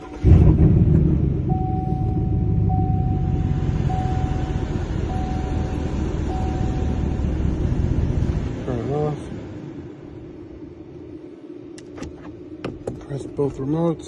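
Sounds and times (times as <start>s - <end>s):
car engine idling: 0.0s - 14.0s
single-pitch beep: 1.5s - 7.1s.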